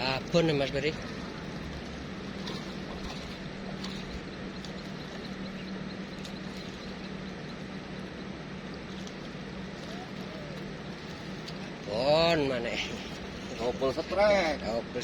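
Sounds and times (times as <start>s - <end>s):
motor humming: 0.0s - 14.9s
constant rushing background: 0.0s - 15.0s.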